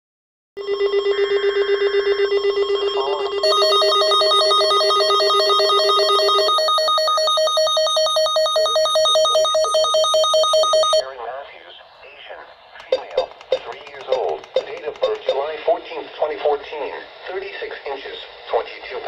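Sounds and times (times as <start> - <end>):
pulsing electronic alert tone: 0.6 - 11.0.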